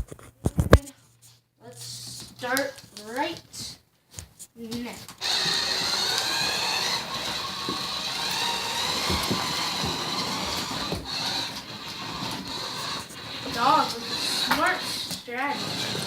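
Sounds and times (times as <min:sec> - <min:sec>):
toy car electric motor whining: 0:05.2 - 0:16.0.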